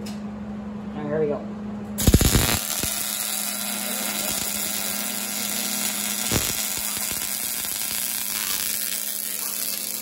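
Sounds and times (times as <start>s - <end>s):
welder arc crackling: 2.0s - 10.0s.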